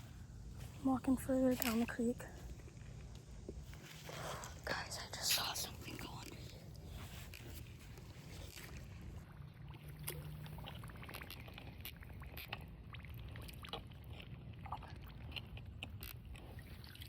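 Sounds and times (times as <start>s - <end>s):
water sloshing around wading person: 5.7s - 17.0s.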